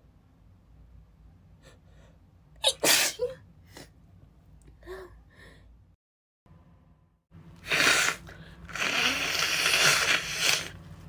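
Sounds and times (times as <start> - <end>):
woman sneezing: 2.6 - 3.4
breaths and sniffs: 7.6 - 10.8.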